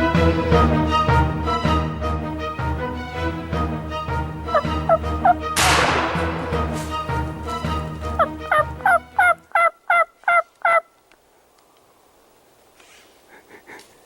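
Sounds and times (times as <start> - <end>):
turkey yelping: 4.5 - 5.4, 8.1 - 10.9.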